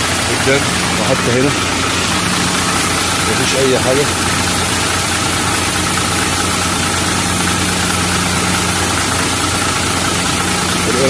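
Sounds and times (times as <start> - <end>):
truck engine idling: 0.0 - 11.0.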